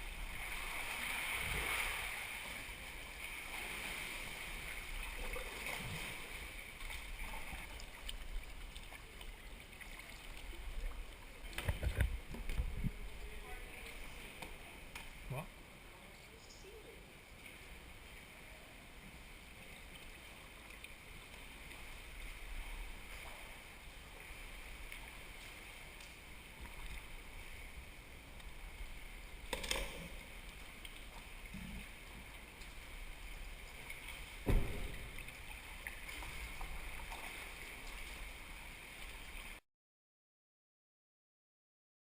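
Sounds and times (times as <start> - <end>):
water and wind noise: 0.0 - 39.6
sharp knocks: 34.5 - 35.1.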